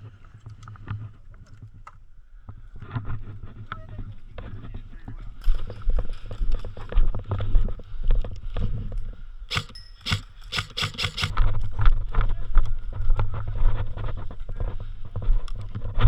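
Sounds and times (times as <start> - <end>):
thumping and rustling of movement: 2.4 - 12.3
airsoft gun shots: 9.5 - 11.3.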